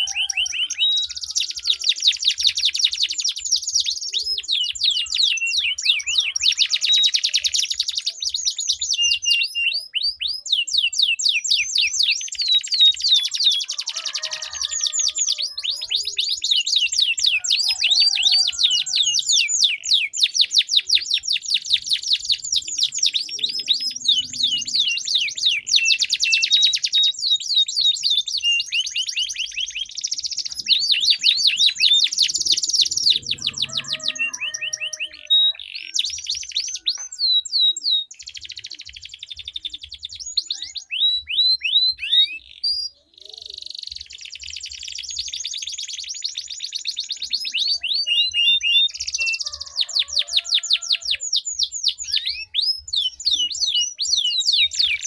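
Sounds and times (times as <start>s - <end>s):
canaries trilling: 0.0s - 55.0s.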